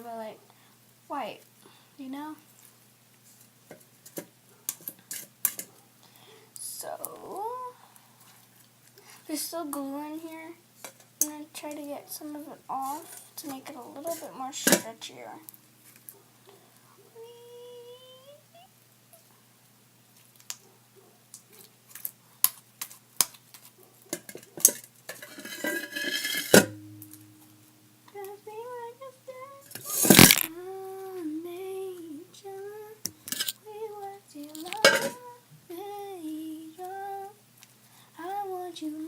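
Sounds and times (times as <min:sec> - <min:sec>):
girl humming a tune: 0:06.8 - 0:07.8, 0:17.1 - 0:19.3, 0:33.7 - 0:37.3
spoon clinking and scraping a bowl: 0:24.2 - 0:27.2, 0:34.8 - 0:35.2.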